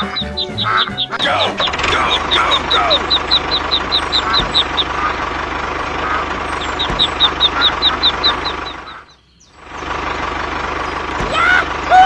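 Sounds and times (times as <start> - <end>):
high chirp: 0.0 - 5.2, 5.8 - 9.8
small engine chugging: 0.0 - 12.0.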